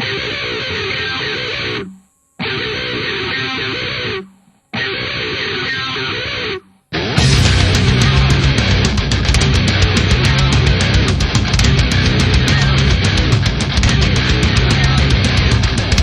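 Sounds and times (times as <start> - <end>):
guitar phrase: 0.0 - 16.0
heavy full-band music: 7.0 - 16.0.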